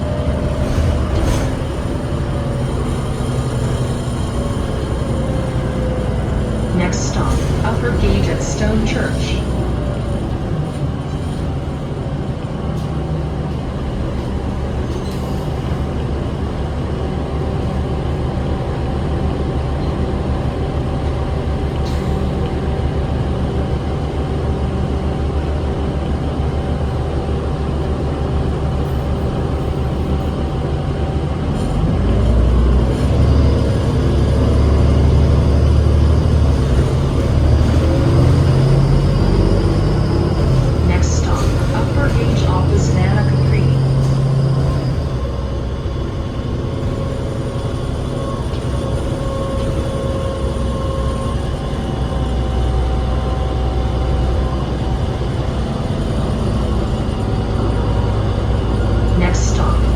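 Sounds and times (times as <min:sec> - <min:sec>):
road noise: 0:00.0 - 0:17.9, 0:28.4 - 0:59.9
bus diesel engine running: 0:00.0 - 0:59.9.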